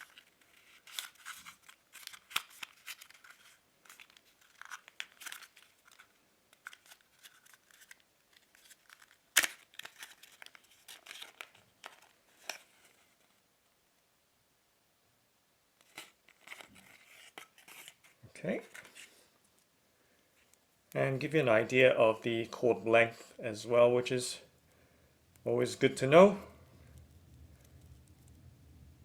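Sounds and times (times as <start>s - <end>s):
packaging rustling and crinkling: 0.0s - 13.4s, 15.8s - 19.2s.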